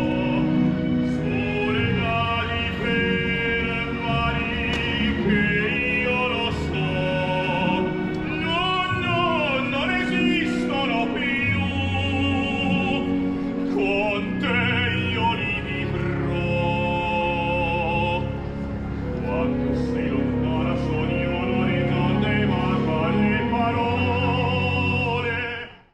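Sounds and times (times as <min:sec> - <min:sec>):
instrumental accompaniment: 0:00.0 - 0:25.7
operatic singing voice: 0:00.0 - 0:25.9.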